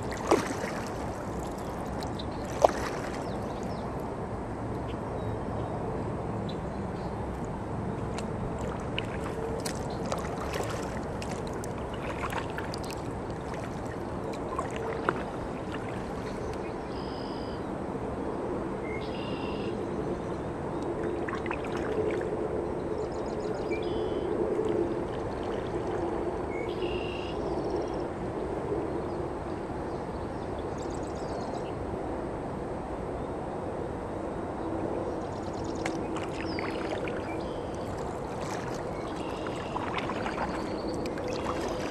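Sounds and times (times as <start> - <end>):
paddle swishing and dripping: 0.0 - 4.1, 7.4 - 17.6, 20.8 - 22.4, 35.3 - 41.9
water trickling past hull: 0.0 - 4.1, 7.3 - 17.6, 20.8 - 22.4, 23.8 - 27.2, 35.1 - 41.9.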